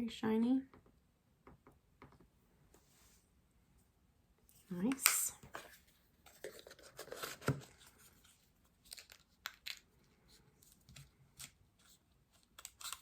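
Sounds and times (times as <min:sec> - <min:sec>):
packaging crinkling: 0:11.9 - 0:13.0.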